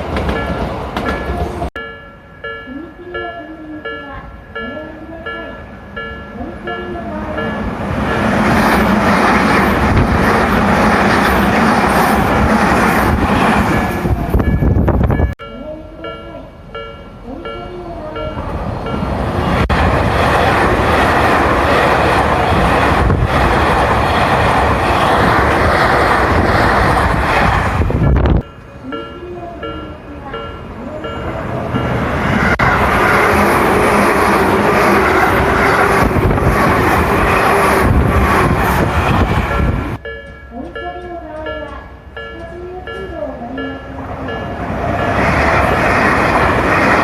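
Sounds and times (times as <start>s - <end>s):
level crossing warning bell: 0.0s - 8.9s, 13.4s - 19.7s, 28.0s - 36.3s, 39.5s - 45.8s
electric trains rumbling past: 0.0s - 47.0s.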